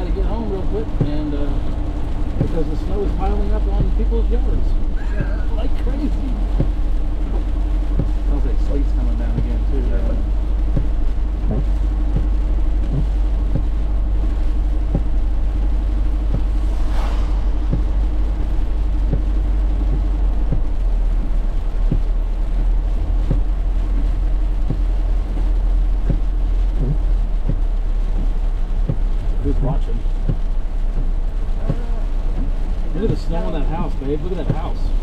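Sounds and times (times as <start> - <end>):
sleet ticking on car: 0.0 - 16.8, 17.5 - 35.0
car road rumble: 0.0 - 35.0.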